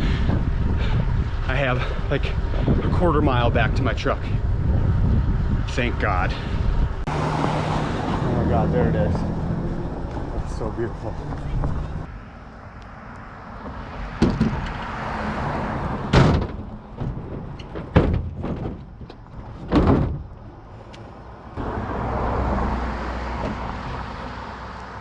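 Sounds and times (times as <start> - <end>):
steady rushing noise: 0.0 - 17.6
truck doors clunking shut: 14.1 - 21.2, 23.3 - 24.0.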